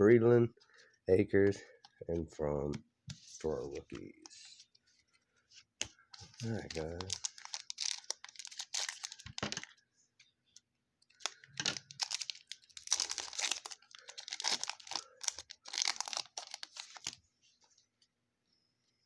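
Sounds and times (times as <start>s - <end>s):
wrapper tearing and crinkling: 6.3s - 9.7s, 11.2s - 17.2s.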